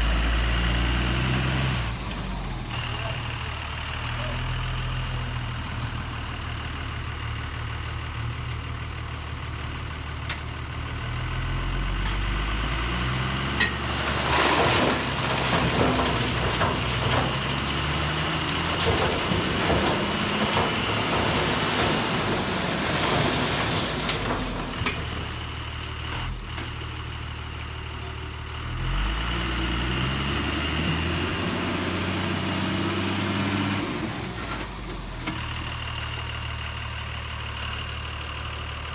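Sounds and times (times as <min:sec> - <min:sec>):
rough noise and clatter: 0:13.6 - 0:25.4.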